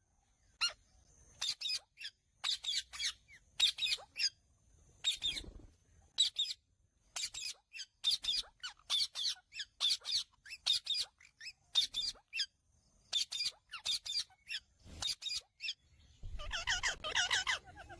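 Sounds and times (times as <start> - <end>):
parakeet squawking: 7.2 - 12.5, 13.1 - 17.9.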